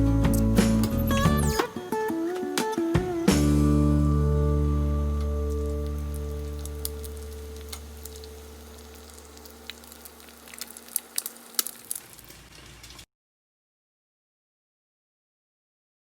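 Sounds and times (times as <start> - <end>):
guitar chord ringing: 0.0 - 9.7
faint crackles and clicks: 5.2 - 13.0.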